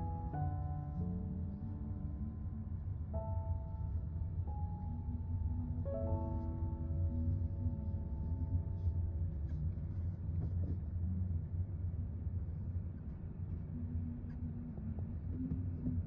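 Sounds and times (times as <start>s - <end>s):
piano piece: 0.0s - 9.9s.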